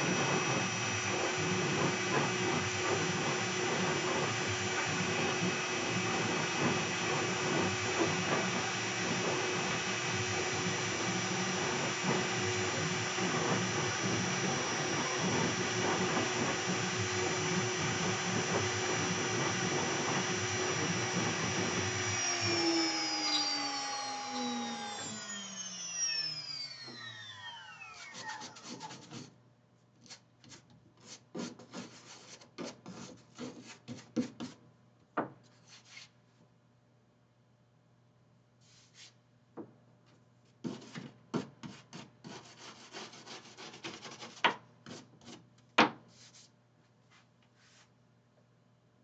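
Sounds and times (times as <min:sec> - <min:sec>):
router spindle whine: 0:00.0 - 0:28.6.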